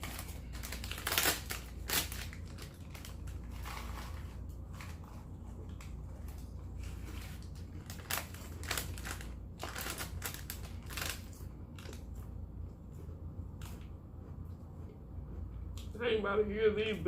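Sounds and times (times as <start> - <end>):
chip bag crinkling: 0.0 - 12.3
potato chips crunching: 0.0 - 16.0.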